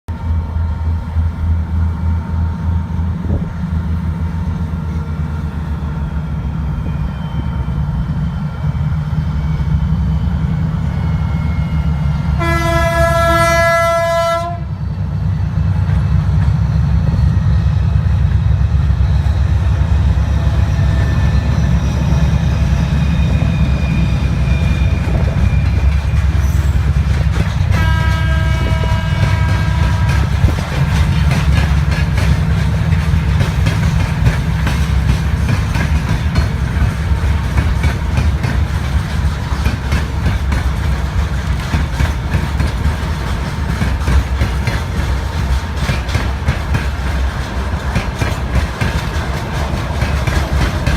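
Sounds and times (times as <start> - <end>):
locomotive diesel engine rumbling: 0.1 - 50.9
locomotive horn blast: 12.3 - 14.8, 27.6 - 30.4
faint horn: 12.4 - 14.7.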